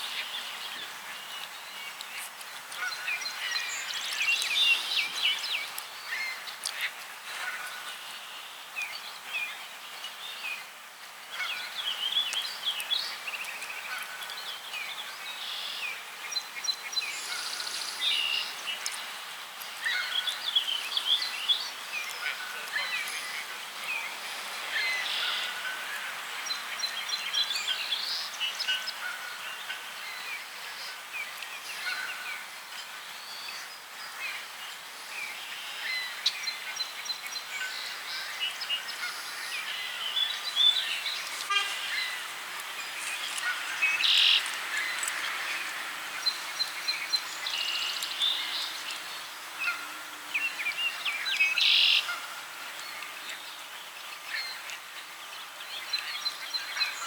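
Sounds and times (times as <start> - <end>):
small birds chirping: 0.0 - 10.7, 33.0 - 57.0
outdoor background hiss: 0.0 - 57.0.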